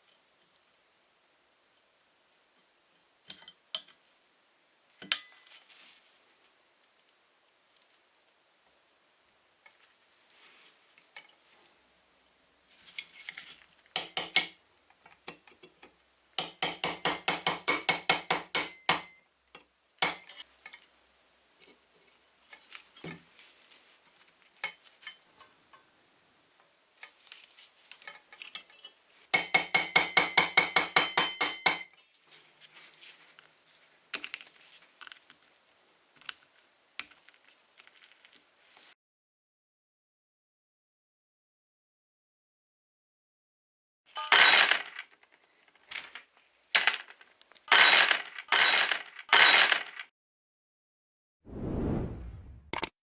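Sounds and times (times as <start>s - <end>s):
metal tapping on toy truck: 14.0s - 14.6s, 16.4s - 19.2s, 29.4s - 31.9s.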